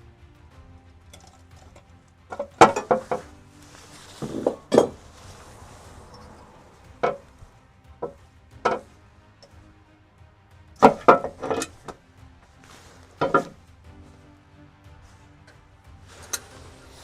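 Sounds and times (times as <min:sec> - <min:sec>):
metal tools and bolts clinking: 0:01.1 - 0:03.3.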